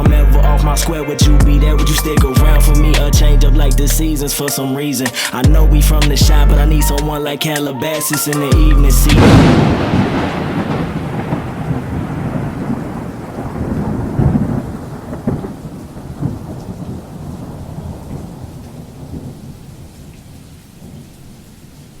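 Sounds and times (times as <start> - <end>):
thunder rolling: 8.5 - 19.9
steady rain: 9.2 - 22.0.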